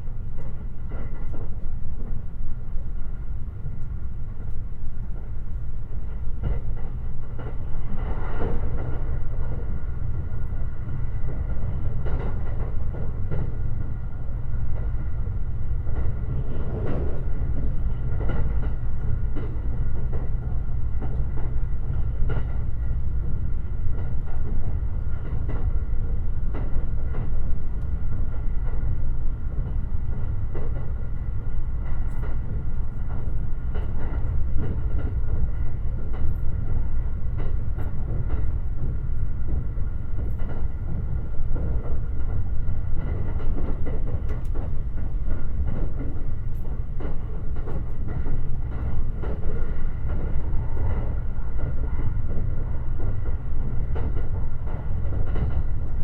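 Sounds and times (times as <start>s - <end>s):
train wheels rumbling on rail: 0.0s - 56.0s
light clicks over track: 0.3s - 2.2s, 3.6s - 10.6s, 23.9s - 29.0s, 29.6s - 56.0s.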